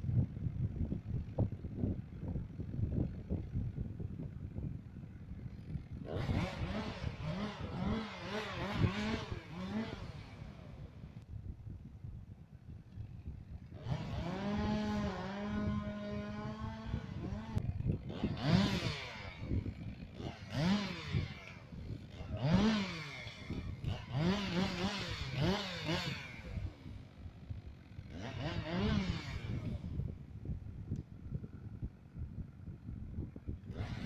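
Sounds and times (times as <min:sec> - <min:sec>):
chainsaw engine revving: 0:04.8 - 0:11.2, 0:13.0 - 0:30.6, 0:33.6 - 0:34.0.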